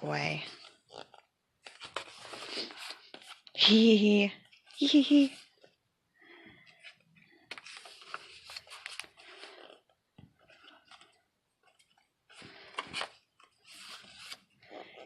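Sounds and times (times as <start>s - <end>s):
paper rustling and crinkling: 0.3s - 3.6s, 6.7s - 15.0s.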